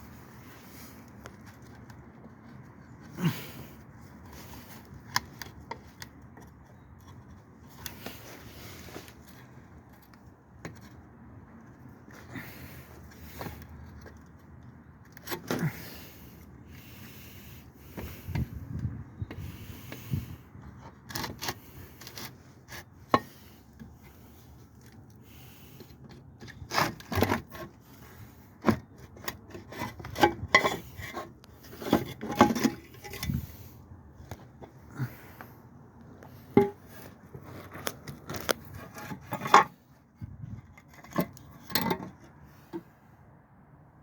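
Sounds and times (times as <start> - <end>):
tools scraping and rubbing: 0.1 - 11.1, 19.3 - 35.4, 36.2 - 42.8.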